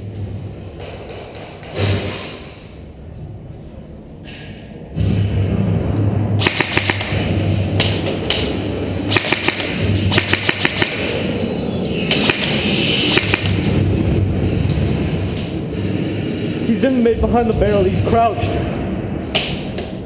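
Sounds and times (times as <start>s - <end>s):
low rumble: 2.4s - 20.0s
airsoft guns firing: 6.4s - 11.3s, 12.1s - 13.8s.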